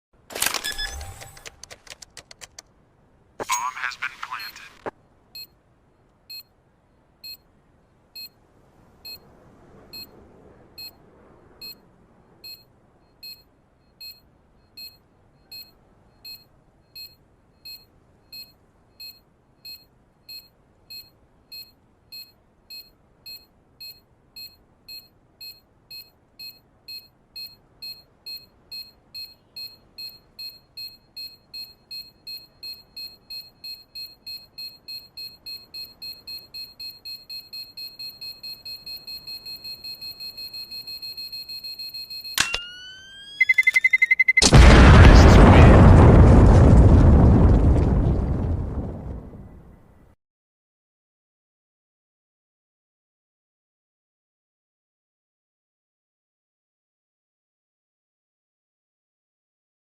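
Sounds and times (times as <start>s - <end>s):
high-pitched electronic beeps: 12.4s - 44.5s.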